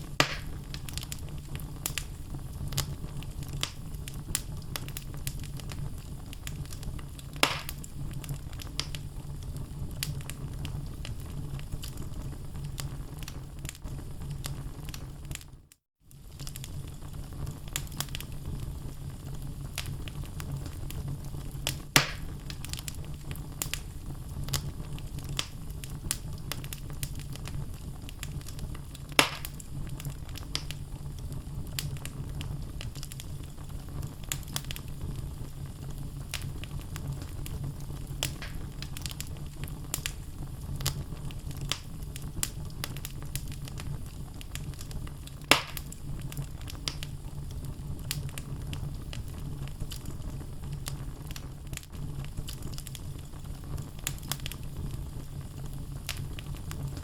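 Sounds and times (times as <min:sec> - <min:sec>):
logs crackling and popping: 0:00.0 - 0:57.0
low fire rumble: 0:00.0 - 0:57.0.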